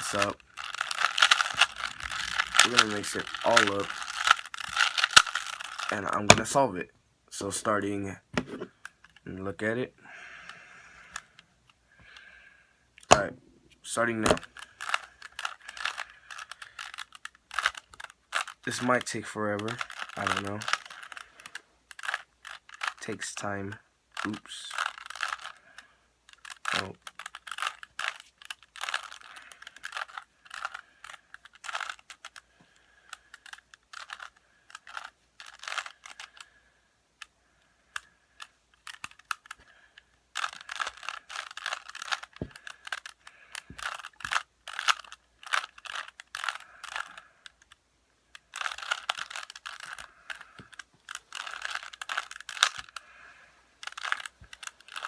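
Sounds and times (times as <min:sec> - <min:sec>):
puzzle cube plastic clicks: 0:00.0 - 0:06.6, 0:08.4 - 0:09.3, 0:13.0 - 0:55.0.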